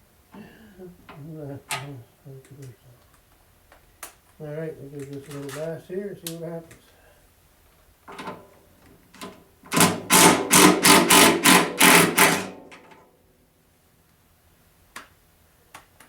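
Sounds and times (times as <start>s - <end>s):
power tool bursts: 9.7s - 12.8s.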